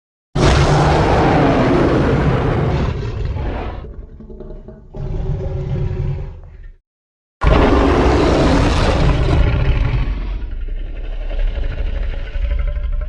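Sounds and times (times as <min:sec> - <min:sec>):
long loud animal roar: 0:00.4 - 0:04.1, 0:07.4 - 0:13.0.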